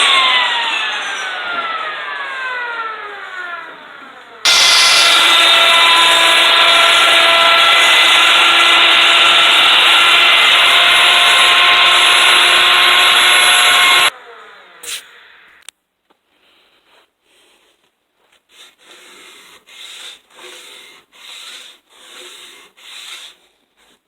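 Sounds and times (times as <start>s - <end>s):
power saw motor whine: 0.0s - 15.6s
wood cutting noise: 0.0s - 15.7s, 18.5s - 24.0s.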